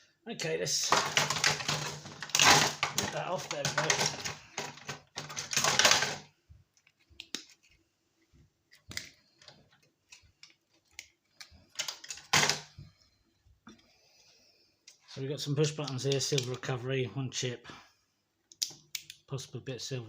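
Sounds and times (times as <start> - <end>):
plastic casing cracking apart: 0.8 - 6.3.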